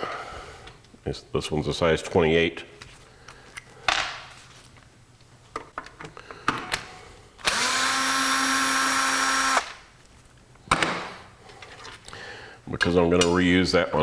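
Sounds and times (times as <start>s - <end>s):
cordless drill whining: 7.4s - 9.8s.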